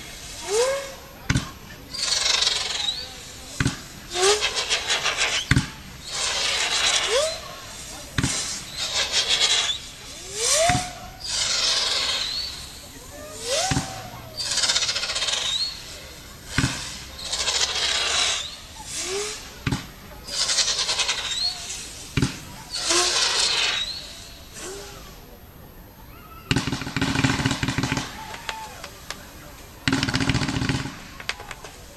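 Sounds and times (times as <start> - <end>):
firework hissing crackle: 0.0 - 31.9
firework launch thumps: 0.4 - 18.0, 18.8 - 25.0.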